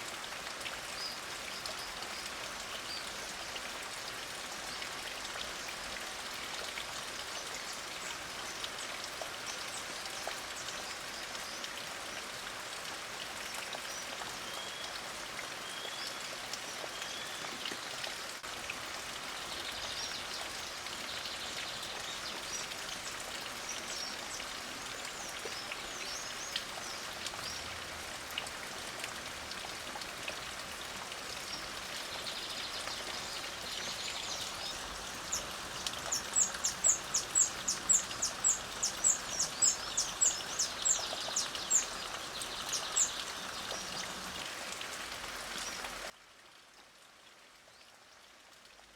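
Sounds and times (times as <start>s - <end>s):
light rain falling: 0.0s - 48.9s
songbirds chirping: 19.1s - 27.8s, 31.3s - 44.4s.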